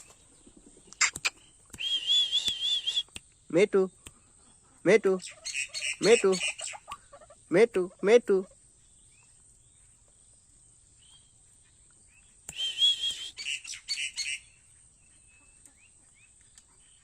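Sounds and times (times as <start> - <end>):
waterhen calling: 0.9 - 3.1, 4.2 - 8.6, 12.5 - 14.6.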